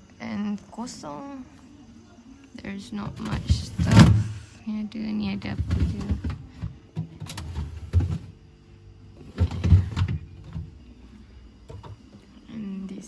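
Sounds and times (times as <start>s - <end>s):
plastic sliding: 3.0s - 4.5s, 5.4s - 8.3s, 9.2s - 10.7s
fridge compartment knocks: 3.1s - 4.4s, 5.4s - 8.3s, 9.2s - 10.8s.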